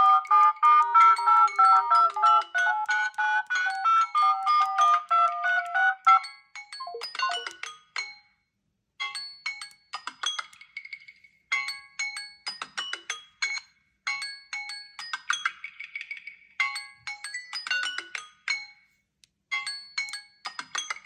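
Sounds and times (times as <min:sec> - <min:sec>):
phone alert melody: 0:00.6 - 0:07.6.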